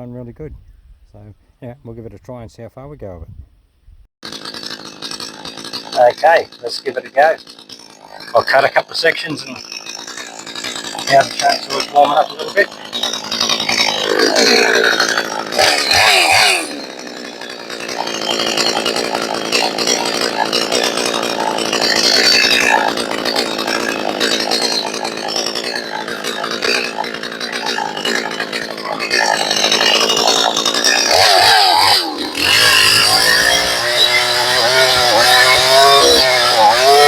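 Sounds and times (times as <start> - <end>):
chainsaw revving and cutting log: 4.2 - 37.0.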